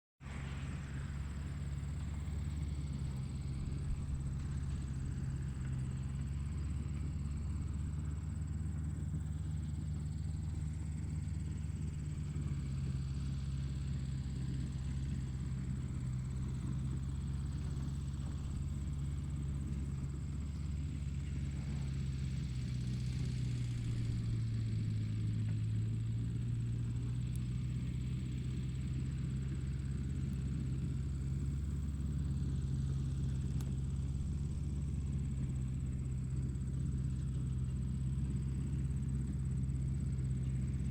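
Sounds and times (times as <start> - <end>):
tractor engine humming: 0.2 - 40.9.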